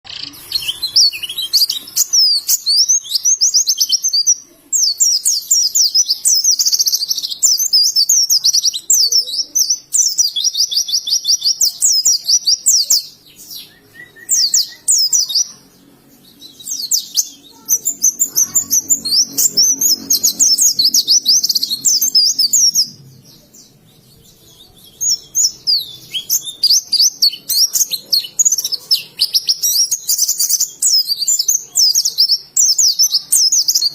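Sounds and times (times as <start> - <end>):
bird twittering high chirps: 0.1 - 33.9.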